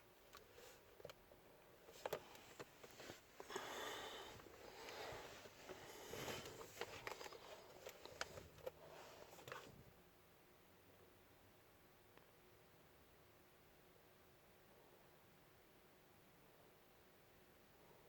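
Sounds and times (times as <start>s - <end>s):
soft rustling: 1.8s - 9.9s
breathy noise: 1.9s - 9.7s.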